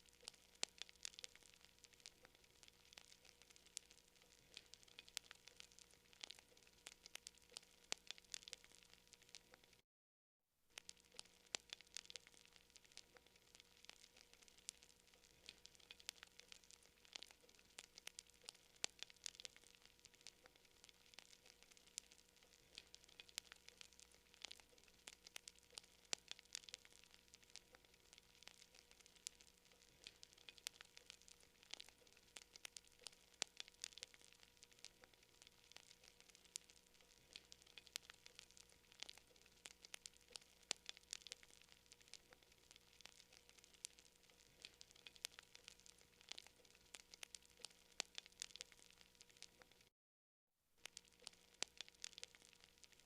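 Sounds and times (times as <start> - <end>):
campfire crackling and popping: 0.0 - 9.8, 10.7 - 49.9, 50.8 - 53.0.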